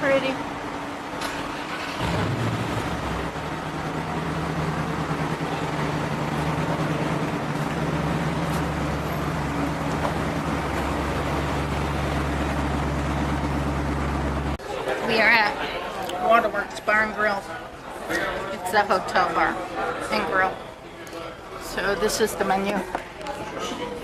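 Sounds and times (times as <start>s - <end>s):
vehicle engine idling: 0.0s - 14.6s
street traffic noise: 0.0s - 24.0s.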